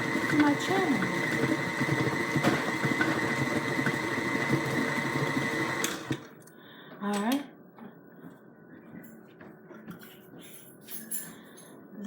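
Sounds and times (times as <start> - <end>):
electric mixer whining: 0.0 - 6.3.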